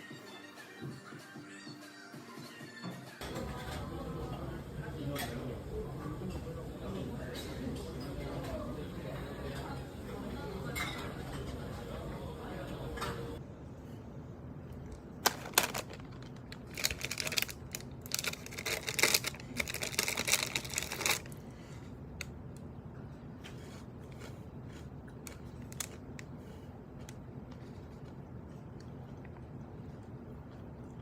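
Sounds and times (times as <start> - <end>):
plastic packaging crinkling and tearing: 15.2 - 21.4, 25.2 - 26.2.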